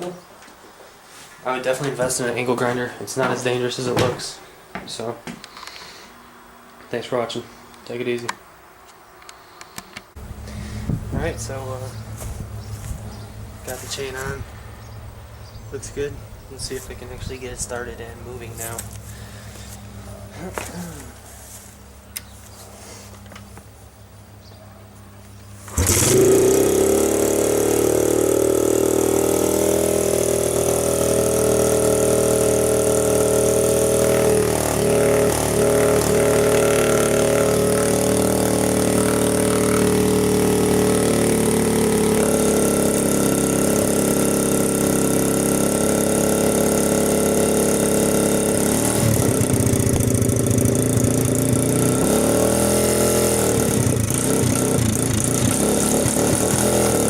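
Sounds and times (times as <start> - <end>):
dirt bike engine idling and revving: 10.2 - 22.5, 25.3 - 57.0.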